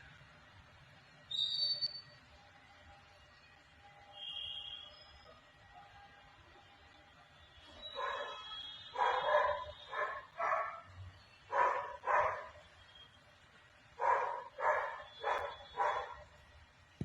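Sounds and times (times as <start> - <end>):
dog barking: 7.9 - 12.6, 14.0 - 16.3.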